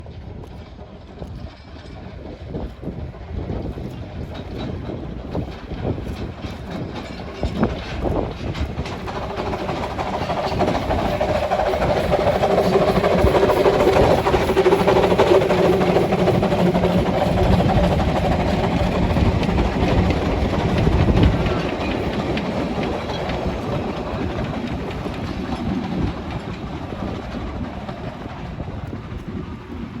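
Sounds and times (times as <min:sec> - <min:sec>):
steam locomotive chuffing: 0:00.1 - 0:30.0.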